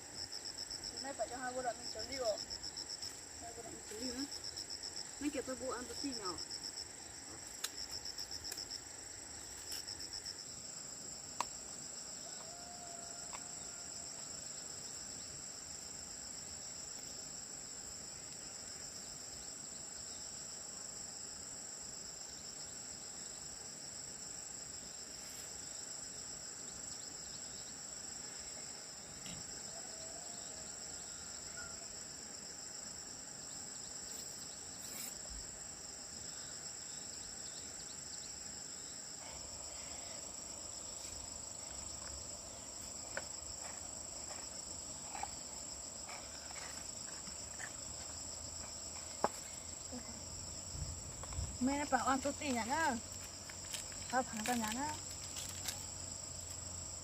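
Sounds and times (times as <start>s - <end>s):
insects chirring: 0.0s - 57.0s
faint animal call: 12.2s - 14.3s.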